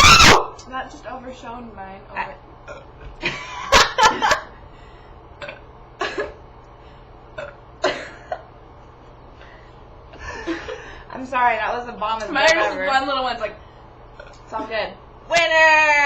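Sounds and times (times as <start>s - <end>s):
person coughing: 5.4s - 6.4s, 7.4s - 8.5s.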